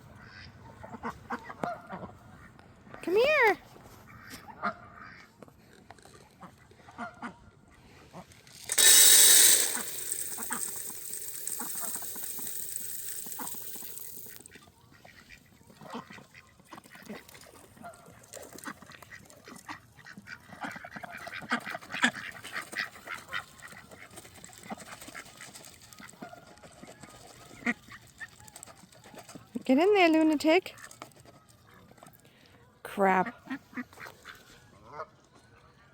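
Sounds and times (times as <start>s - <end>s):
steady hiss: 8.7s - 14.4s.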